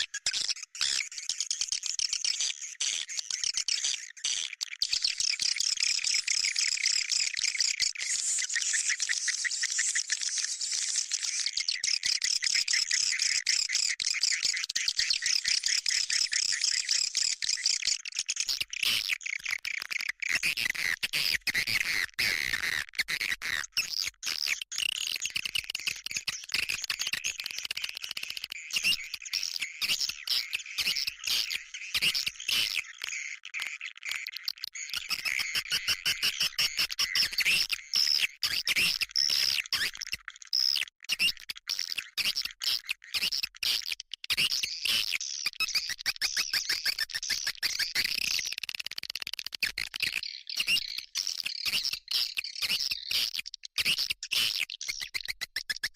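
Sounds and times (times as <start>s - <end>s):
swiftlets twittering and chirping: 2.0s - 20.4s, 44.3s - 55.9s.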